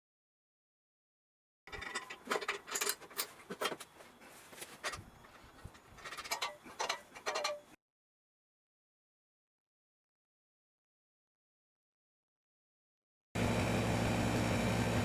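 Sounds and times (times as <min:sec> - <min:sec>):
scraping: 0:01.7 - 0:07.8
sharp clicks and knocks: 0:04.7 - 0:07.8.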